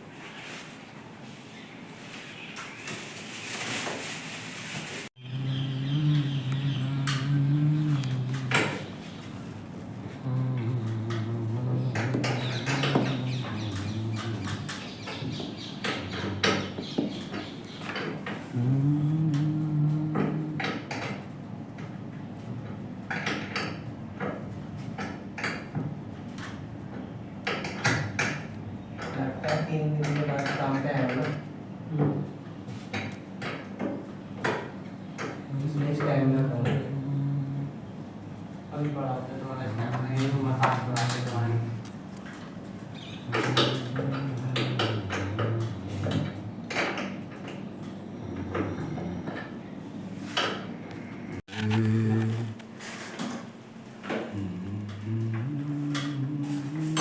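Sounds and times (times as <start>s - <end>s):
low steady hum: 5.2s - 16.8s, 54.0s - 57.0s.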